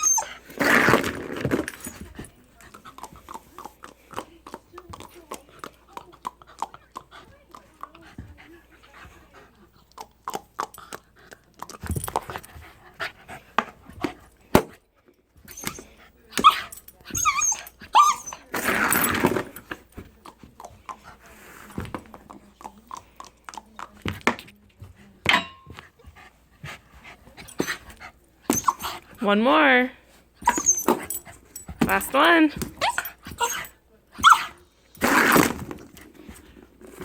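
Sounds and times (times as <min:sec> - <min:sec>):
dog whining: 0:00.0 - 0:01.1, 0:15.4 - 0:19.3, 0:28.5 - 0:29.1, 0:30.4 - 0:31.2, 0:32.8 - 0:35.5.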